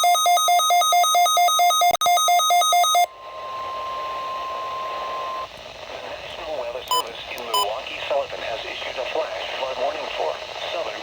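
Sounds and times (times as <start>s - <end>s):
radio static: 3.4s - 11.0s.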